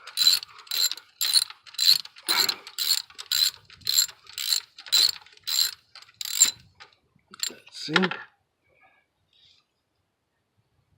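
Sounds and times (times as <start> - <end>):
ratchet wrench clicking: 0.0 - 6.6.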